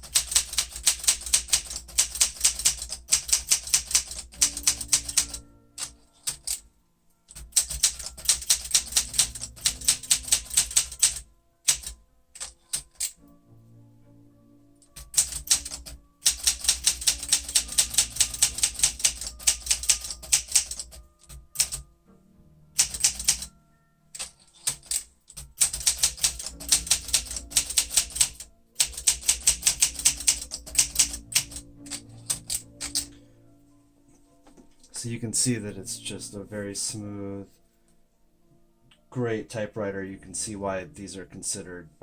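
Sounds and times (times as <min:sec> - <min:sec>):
manual typewriter typing: 0:00.0 - 0:06.6, 0:07.3 - 0:13.2, 0:14.9 - 0:21.8, 0:22.8 - 0:23.5, 0:24.2 - 0:33.1.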